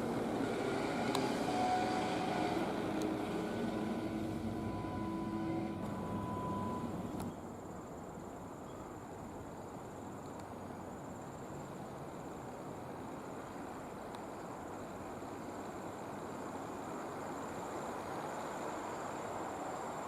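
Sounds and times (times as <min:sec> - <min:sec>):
humming with steady tones: 0:00.0 - 0:07.4
outdoor background hiss: 0:00.0 - 0:20.0.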